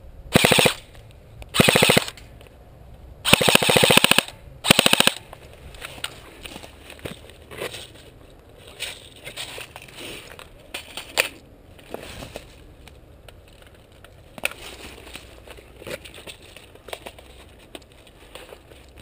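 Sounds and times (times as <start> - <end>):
sharp clicks: 0.4 - 2.3, 3.3 - 5.2.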